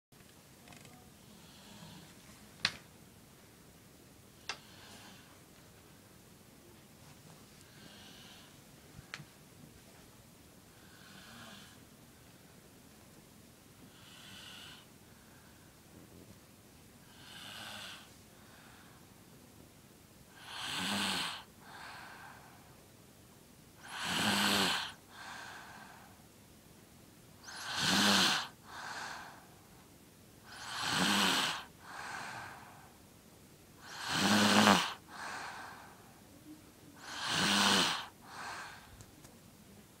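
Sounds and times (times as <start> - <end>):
girl snoring loudly: 14.0 - 14.8, 17.1 - 18.1, 20.4 - 22.4, 23.8 - 25.8, 27.4 - 29.5, 30.5 - 32.8, 33.8 - 35.9, 37.0 - 38.9
soft breath out: 35.1 - 36.2, 38.2 - 39.0.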